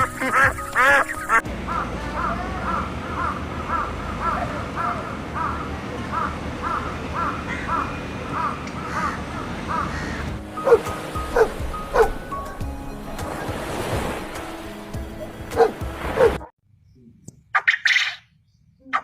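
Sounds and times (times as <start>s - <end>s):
loud different bird call: 0.0s - 10.8s.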